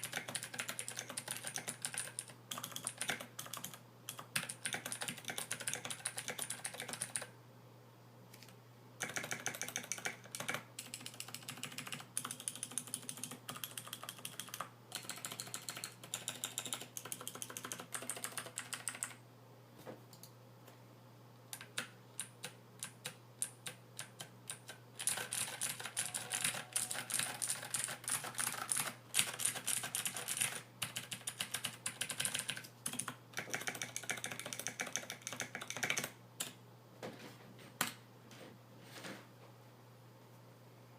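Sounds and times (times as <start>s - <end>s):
mechanical keyboard typing: 0.0s - 7.3s, 8.4s - 19.2s, 21.5s - 36.6s
faint steady hum: 0.0s - 40.9s.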